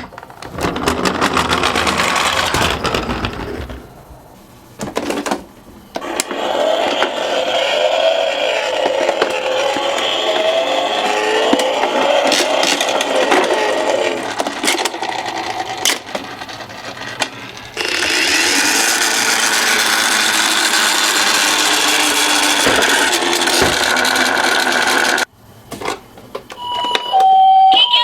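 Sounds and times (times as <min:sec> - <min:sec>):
toy cars rolling on track: 0:00.0 - 0:04.0, 0:06.0 - 0:25.3
knocks: 0:22.6 - 0:24.0.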